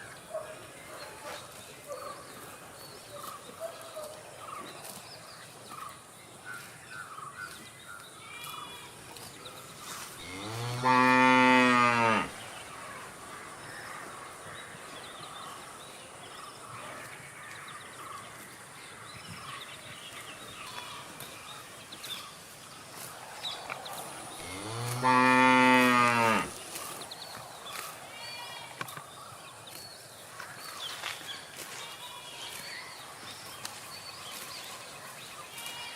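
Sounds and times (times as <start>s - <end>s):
faint outdoor background sounds: 0.0s - 35.9s
cow mooing: 10.2s - 12.4s, 24.4s - 26.5s.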